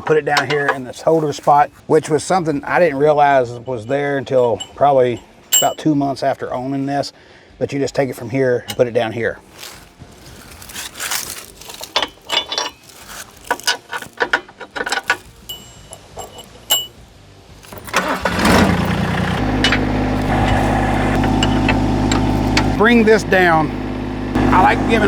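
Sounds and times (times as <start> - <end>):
starter cranking: 9.4 - 16.9, 17.6 - 25.0
tractor engine idling: 9.4 - 16.9, 17.6 - 25.0
clicks and knocks: 19.4 - 22.8.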